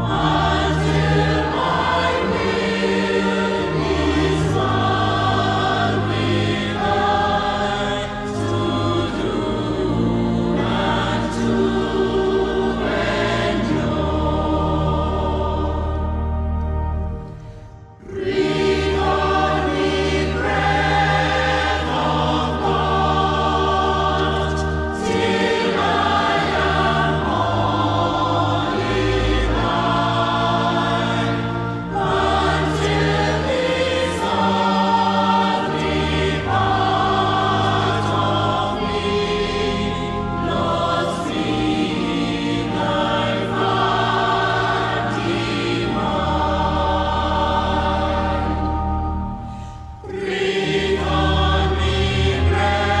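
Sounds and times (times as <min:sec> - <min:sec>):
low bass notes: 0:00.0 - 0:34.4
choir singing gospel music: 0:00.0 - 0:53.0
instrumental accompaniment: 0:00.0 - 0:53.0.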